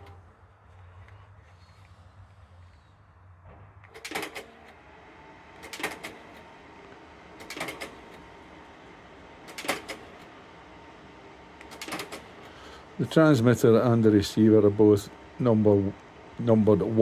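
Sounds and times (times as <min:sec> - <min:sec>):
slide projector mechanism clicking: 0:03.8 - 0:04.8, 0:05.4 - 0:08.8, 0:09.4 - 0:10.6, 0:11.5 - 0:12.8.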